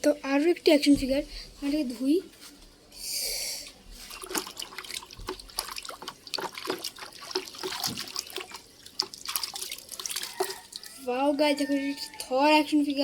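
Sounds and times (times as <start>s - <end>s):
water splashing and dripping: 4.1s - 11.1s.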